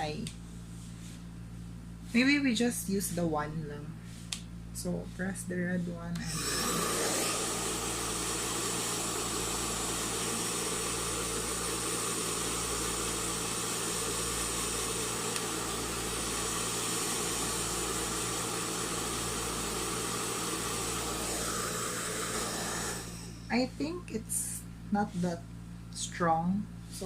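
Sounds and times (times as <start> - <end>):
hair dryer running: 6.1 - 23.6.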